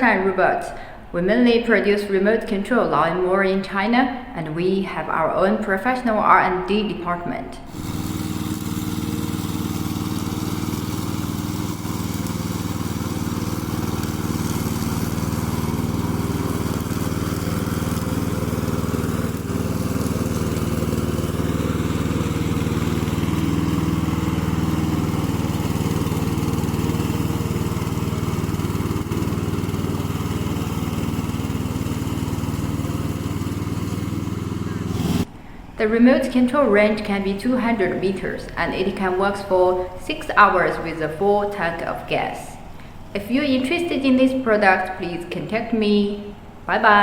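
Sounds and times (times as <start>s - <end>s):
lawn mower engine running: 7.7s - 35.7s.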